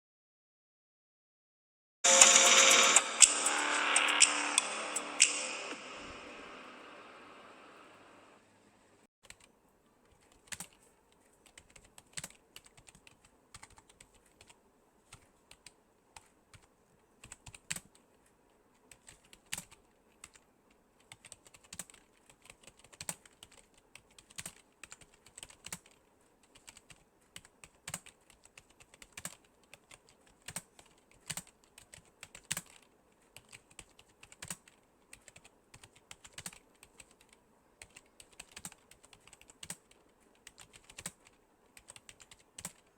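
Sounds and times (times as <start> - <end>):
typing on phone keyboard: 9.2 - 42.9.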